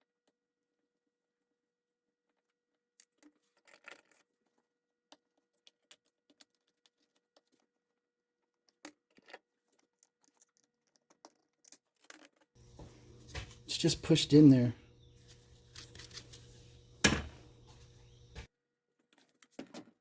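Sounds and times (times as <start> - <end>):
small hard objects clicking and rattling: 3.0 - 13.9, 15.2 - 17.0.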